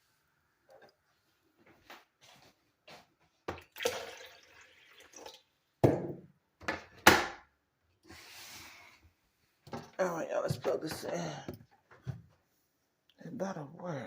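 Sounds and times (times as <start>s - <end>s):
water pouring into reservoir: 3.6s - 5.6s
loud thuds of objects set down: 5.8s - 7.4s.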